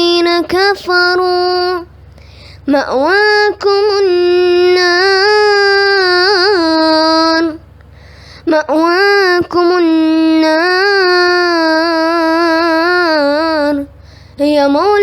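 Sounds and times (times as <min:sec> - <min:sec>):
child chanting: 0:00.0 - 0:01.9, 0:02.6 - 0:07.6, 0:08.4 - 0:15.0.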